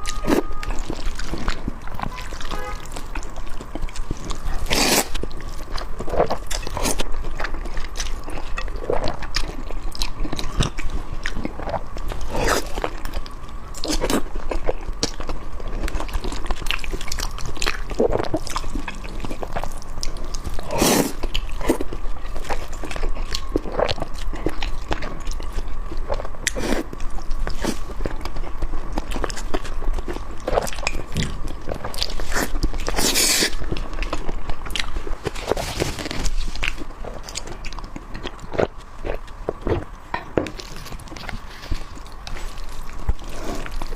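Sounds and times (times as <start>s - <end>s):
faint steady tone: 0.0s - 4.6s
person chewing and crunching: 0.0s - 43.9s.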